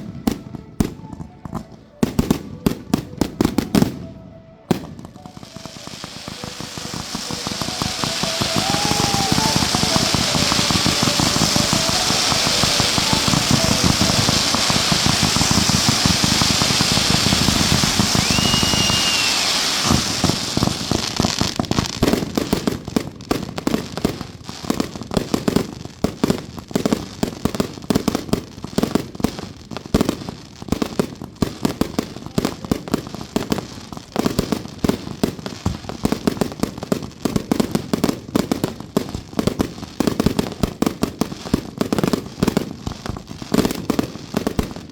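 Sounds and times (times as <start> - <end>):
firework whistle: 0.0 - 22.6
fireworks bangs and crackling: 0.0 - 44.9.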